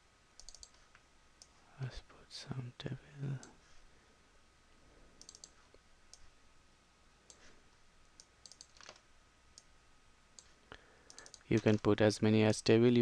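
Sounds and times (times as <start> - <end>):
faint computer mouse clicks: 0.4 - 1.6, 5.2 - 6.3, 8.2 - 9.0, 10.4 - 11.8.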